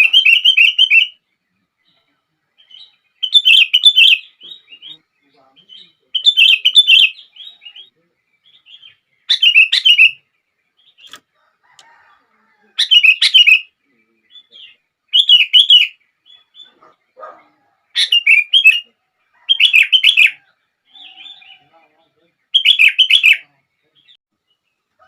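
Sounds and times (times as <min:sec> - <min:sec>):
bird singing whistled phrases: 0:00.0 - 0:01.2, 0:02.6 - 0:05.0, 0:05.6 - 0:10.2, 0:12.8 - 0:16.9, 0:18.0 - 0:18.9, 0:22.5 - 0:24.2
faint bird chirps: 0:00.0 - 0:25.0.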